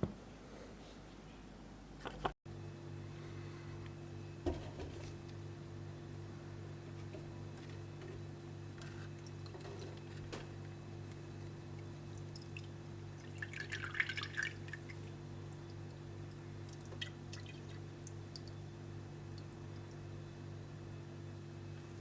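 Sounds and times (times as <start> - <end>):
steady low hum: 0.0 - 22.0
water dripping and splashing: 11.1 - 18.6.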